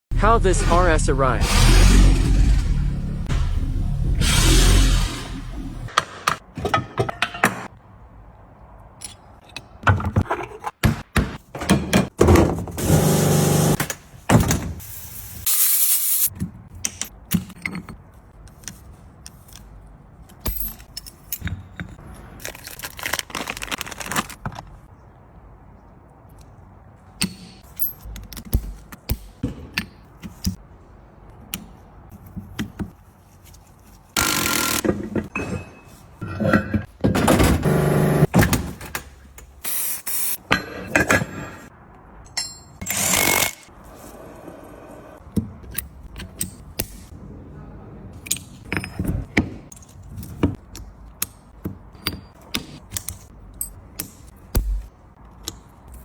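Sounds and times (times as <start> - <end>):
metal tools clinking and scraping: 42.3 - 43.0.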